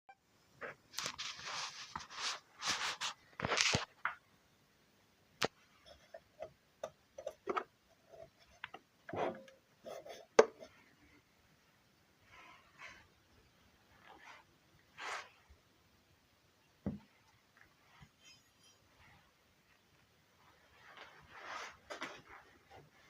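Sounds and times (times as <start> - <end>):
brushing or scraping strokes: 1.0 - 3.9, 13.9 - 15.5, 20.4 - 22.8.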